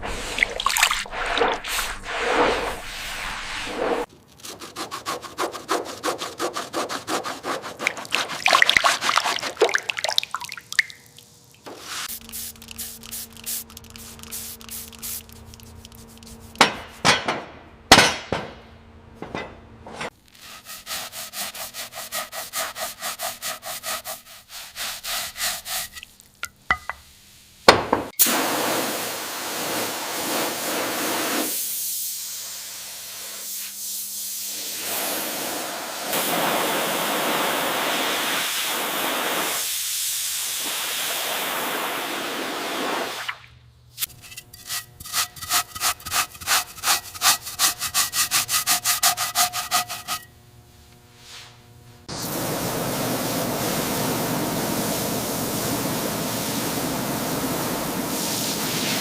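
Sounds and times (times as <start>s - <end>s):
spray hissing: 0.0s - 4.1s, 11.7s - 16.6s, 52.1s - 59.0s
hand scrubbing strokes: 0.0s - 16.6s, 20.3s - 26.3s, 44.0s - 50.3s.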